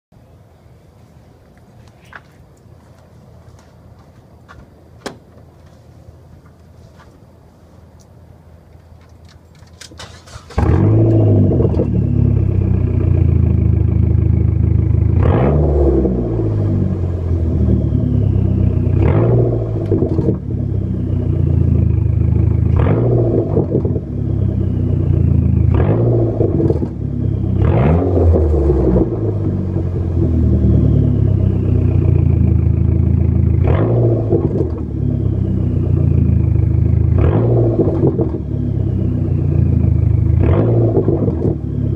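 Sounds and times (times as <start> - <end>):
car engine starting and idling: 7.8 - 41.9
engine revving: 10.0 - 41.9.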